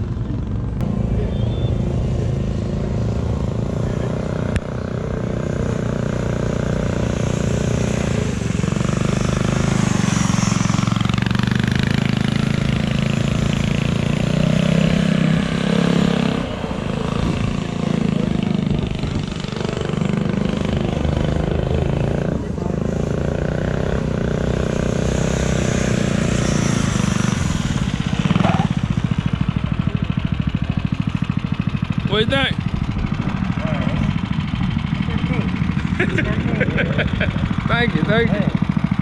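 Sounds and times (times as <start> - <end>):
vehicle engine under throttle: 0.0 - 39.0.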